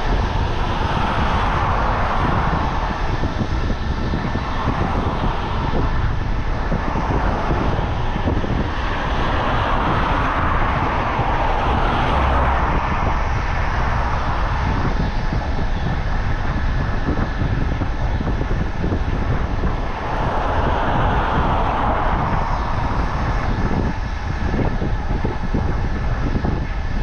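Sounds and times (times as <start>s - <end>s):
wind rumble on microphone: 0.0s - 27.0s
vehicle passing: 6.9s - 15.0s, 19.1s - 24.6s.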